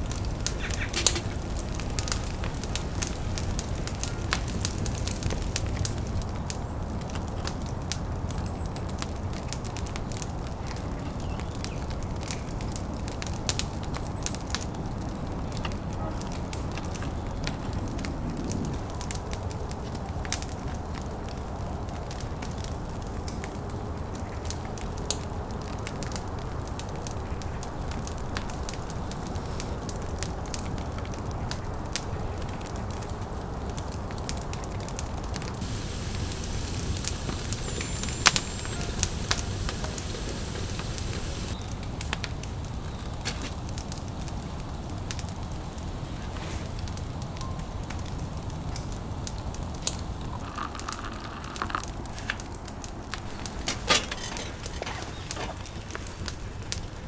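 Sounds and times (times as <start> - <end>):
campfire crackling and popping: 0.0 - 57.0
high hiss: 35.6 - 41.6
low rush of flame: 35.6 - 42.6.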